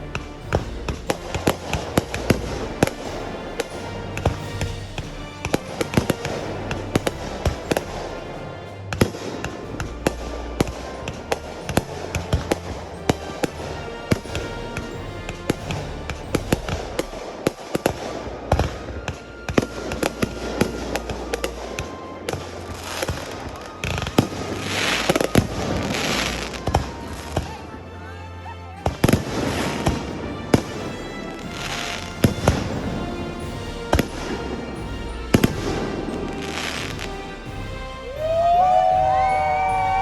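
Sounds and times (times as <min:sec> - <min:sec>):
firework bangs and pops: 0:29.0 - 0:38.0.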